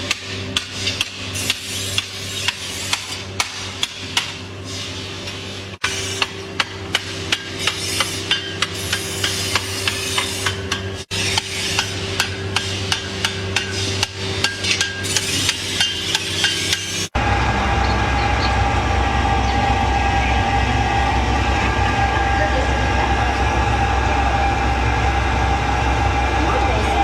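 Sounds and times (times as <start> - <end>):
hammer striking steel: 0.0 - 4.4, 5.8 - 17.1
mechanical drone with held tone: 17.1 - 27.0
steady low hum: 17.1 - 27.0.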